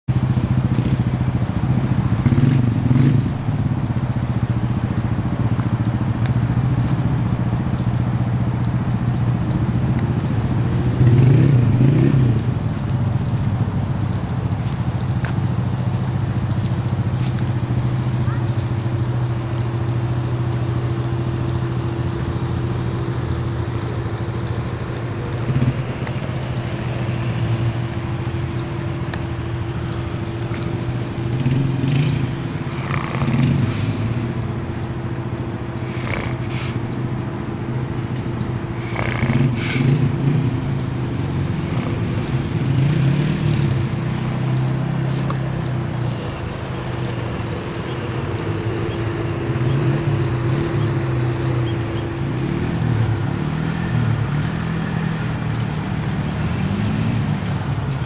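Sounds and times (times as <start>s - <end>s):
person snoring: 35.8s - 36.8s, 38.8s - 40.0s.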